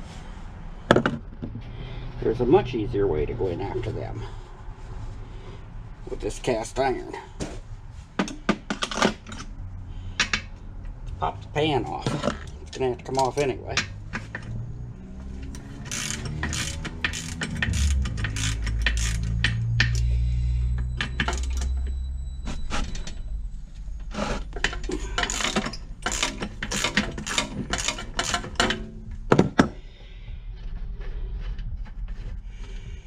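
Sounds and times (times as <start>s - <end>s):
low rumble: 13.8s - 26.1s, 28.6s - 33.0s
ratchet wrench clicking: 15.5s - 20.1s, 21.2s - 21.7s, 25.1s - 28.8s.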